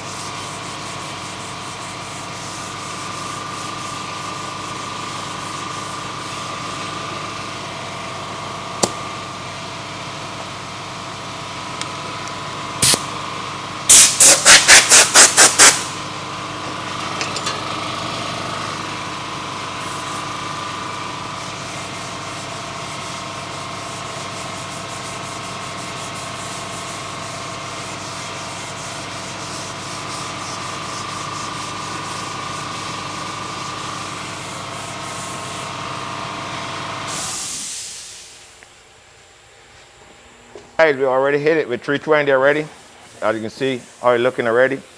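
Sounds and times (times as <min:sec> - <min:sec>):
sanding hiss: 0:00.0 - 0:06.8, 0:13.9 - 0:16.1, 0:21.4 - 0:32.9
sharp click: 0:08.8 - 0:09.1
loud sharp bursts: 0:13.9 - 0:16.0.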